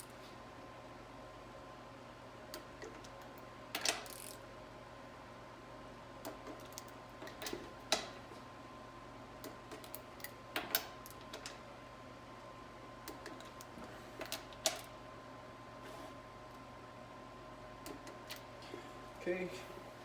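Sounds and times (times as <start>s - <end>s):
torque wrench clicks: 3.8s - 4.4s.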